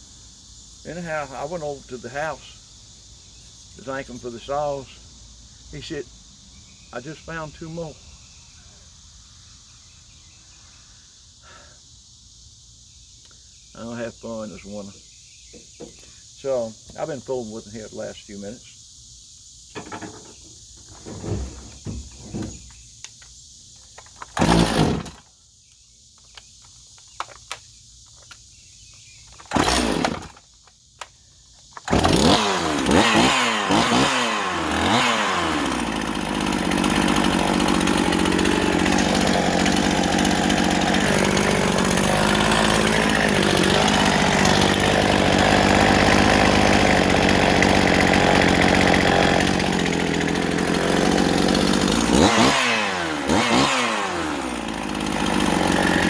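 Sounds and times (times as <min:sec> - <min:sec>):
chainsaw engine revving: 0:19.8 - 0:22.8, 0:24.2 - 0:25.2, 0:29.4 - 0:30.4, 0:31.8 - 0:56.0.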